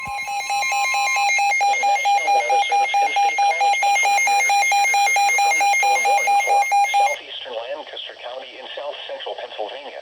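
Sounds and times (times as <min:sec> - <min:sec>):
electronic alert beeping: 0:00.0 - 0:07.2
faint voice: 0:01.5 - 0:10.0.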